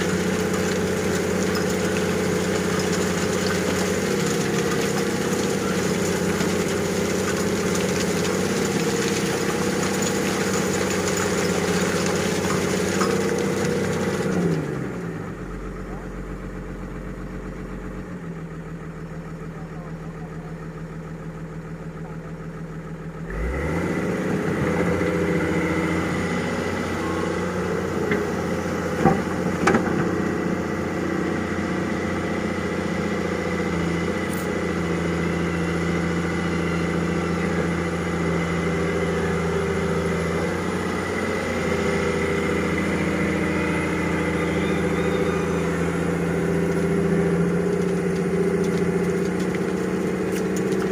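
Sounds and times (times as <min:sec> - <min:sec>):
excavator engine: 0:00.0 - 0:50.9.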